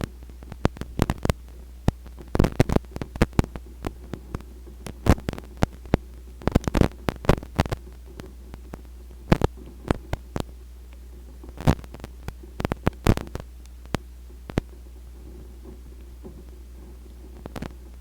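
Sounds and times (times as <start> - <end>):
steady low hum: 0.0 - 18.0
sharp taps and clicks: 0.4 - 15.1.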